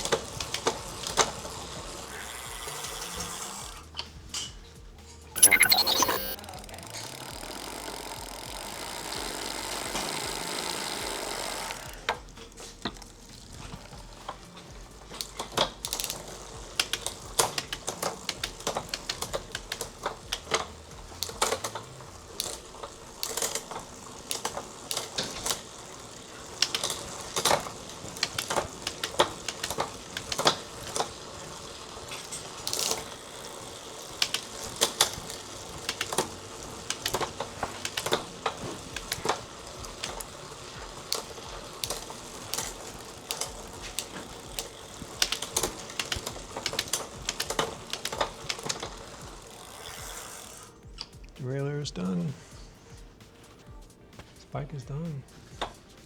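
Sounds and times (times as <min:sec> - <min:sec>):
sharp clicks of chain and ratchet: 0:00.0 - 0:51.4
bicycle chain running through gears: 0:00.0 - 0:53.9, 0:54.7 - 0:56.0.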